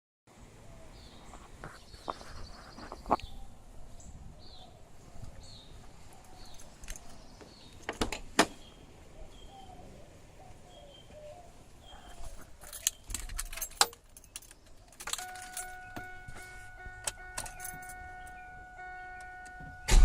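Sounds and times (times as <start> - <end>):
birds chirping: 0.3 - 19.9
sharp clicks and knocks: 12.6 - 17.9.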